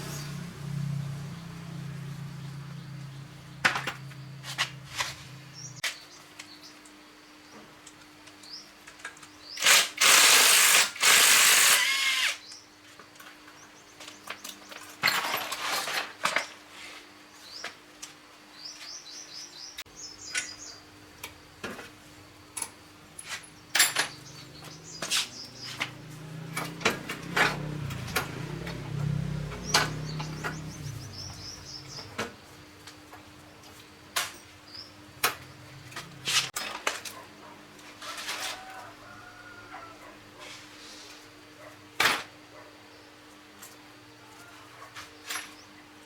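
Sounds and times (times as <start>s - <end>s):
birds chirping: 23.6s - 26.5s, 29.4s - 32.6s.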